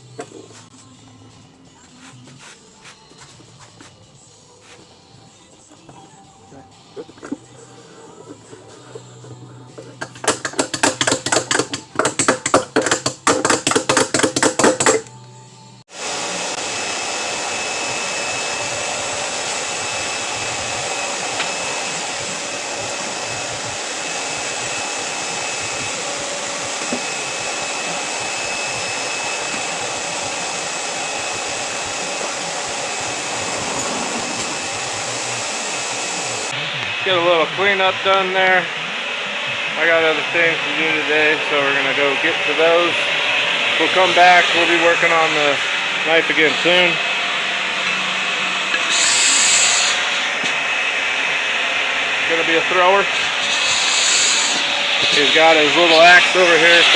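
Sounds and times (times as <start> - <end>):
loud motor whir: 15.9 - 56.9.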